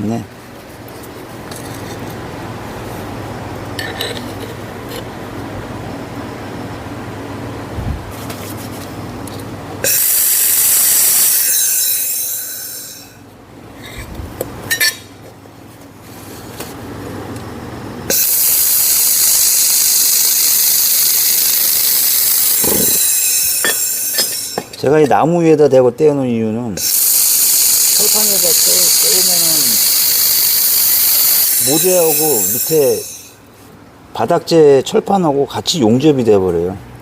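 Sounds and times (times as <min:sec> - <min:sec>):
laser welder hissing: 0:09.8 - 0:13.2, 0:18.1 - 0:24.8, 0:26.8 - 0:33.4.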